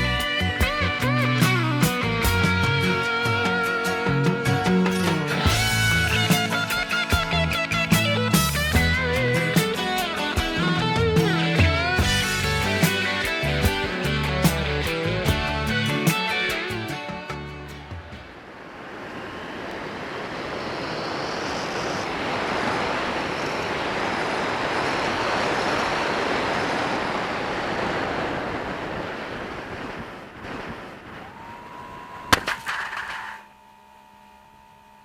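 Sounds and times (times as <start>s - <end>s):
steady high tone: 0.0s - 24.1s
wind rushing over microphone: 18.2s - 32.4s.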